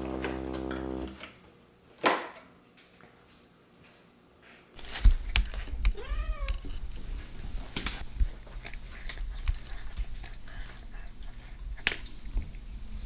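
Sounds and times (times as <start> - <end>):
steady hum: 0.0 - 1.3.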